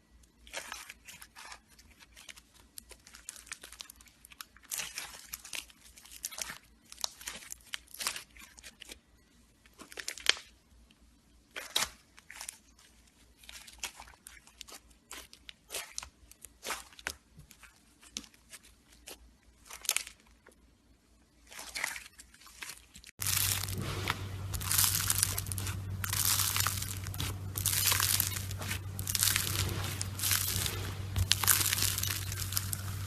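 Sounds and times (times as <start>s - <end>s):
slime crackling and popping: 23.2s - 33.0s.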